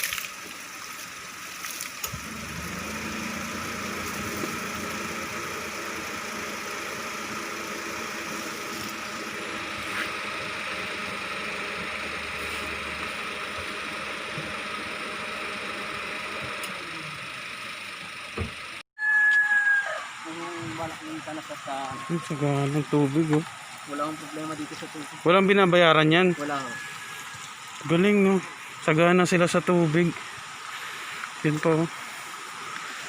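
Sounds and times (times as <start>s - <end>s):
motor humming: 0.1s - 18.8s
steady hiss: 20.2s - 33.0s.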